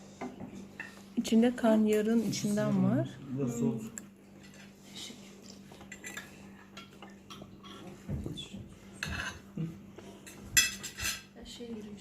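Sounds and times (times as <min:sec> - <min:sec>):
cutlery clinking on plates: 0:05.8 - 0:08.2, 0:09.0 - 0:09.5, 0:10.2 - 0:11.3.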